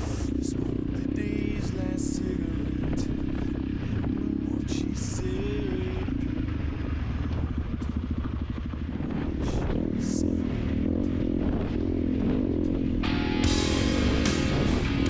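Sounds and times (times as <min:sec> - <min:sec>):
motorcycle engine revving: 0:00.0 - 0:15.0
rock music: 0:12.7 - 0:15.0.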